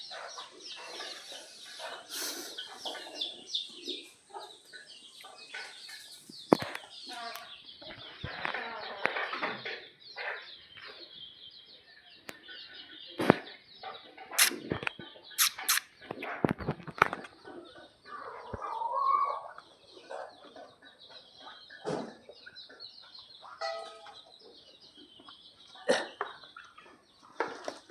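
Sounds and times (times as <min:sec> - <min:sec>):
chickens clucking: 0:00.0 - 0:27.9
chicken call: 0:15.4 - 0:15.8.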